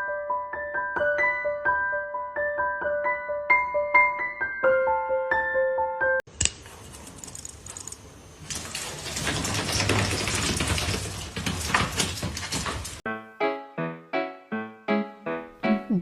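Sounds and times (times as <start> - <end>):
music: 0.0 - 6.2, 13.0 - 16.0
pet clicking and rustling: 6.4 - 13.0.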